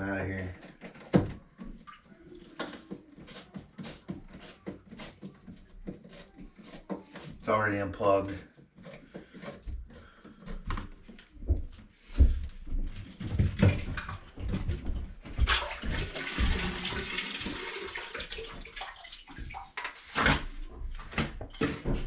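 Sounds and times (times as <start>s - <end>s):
pump knocking and clunking: 8.6s - 19.9s
water splashing and pouring: 15.4s - 20.5s.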